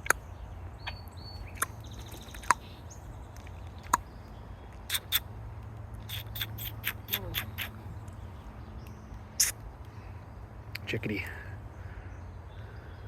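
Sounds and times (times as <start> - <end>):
faint bird chittering: 0.0 - 5.3, 6.0 - 13.0
sharp ticks: 4.7 - 8.2.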